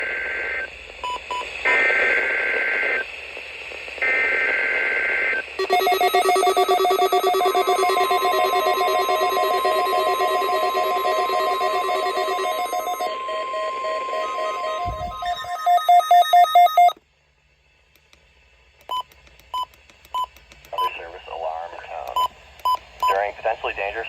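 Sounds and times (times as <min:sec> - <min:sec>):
rapid alert beeping: 0:05.6 - 0:17.0
steady warning alarm tone: 0:05.6 - 0:17.0
warbling digital data tones: 0:05.6 - 0:17.0.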